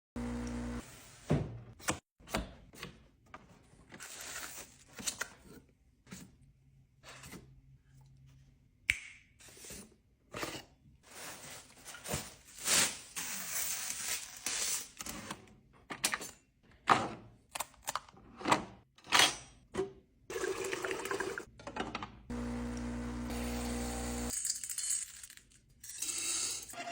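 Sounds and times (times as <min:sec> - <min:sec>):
plastic packaging rustling: 0:11.0 - 0:14.6.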